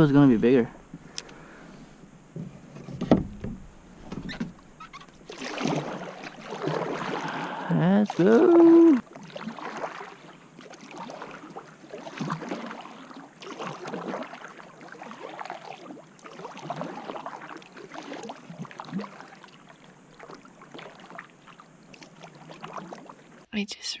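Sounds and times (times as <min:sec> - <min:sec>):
kayak paddle splashing water: 0:04.6 - 0:23.5.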